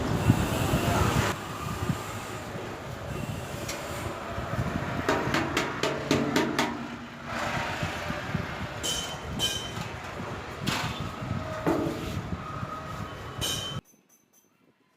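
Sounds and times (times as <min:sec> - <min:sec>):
steady background noise: 0:00.0 - 0:14.3
metallic knocking with ringing tone: 0:05.1 - 0:07.2.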